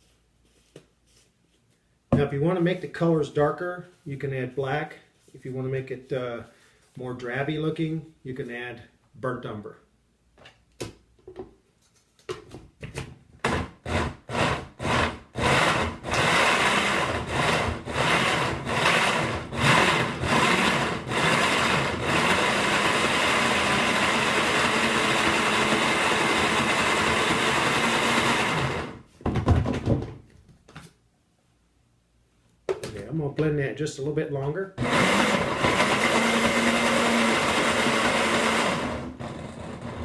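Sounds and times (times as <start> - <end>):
blender running: 13.4 - 29.0, 34.8 - 40.0.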